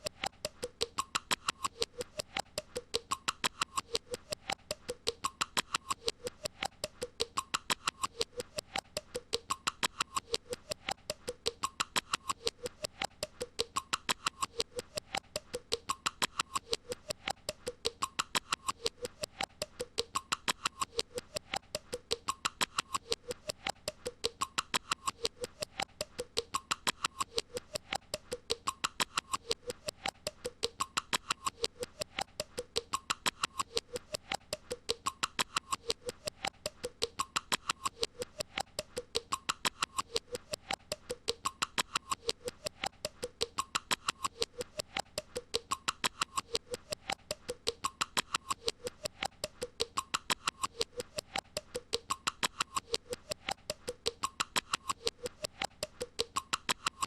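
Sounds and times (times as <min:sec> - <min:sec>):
looped squeaky clicking effect: 0:00.0 - 0:57.0.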